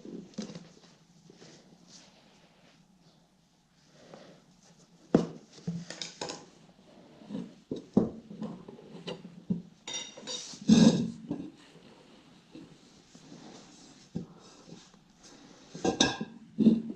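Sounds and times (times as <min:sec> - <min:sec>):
metal tools knocking and clinking: 0:09.8 - 0:10.5.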